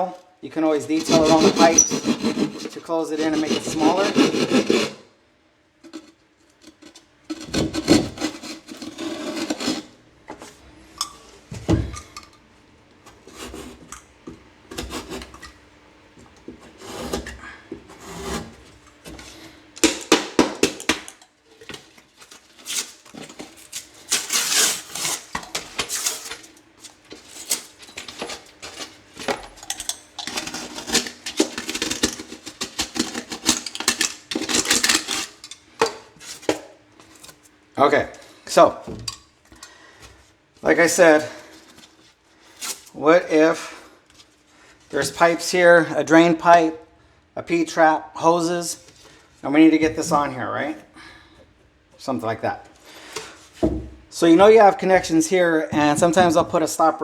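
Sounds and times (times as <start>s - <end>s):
hand saw rasping through drywall: 0.8s - 5.1s, 6.7s - 10.0s, 14.7s - 15.3s, 16.6s - 19.4s, 22.6s - 26.4s, 30.3s - 35.4s.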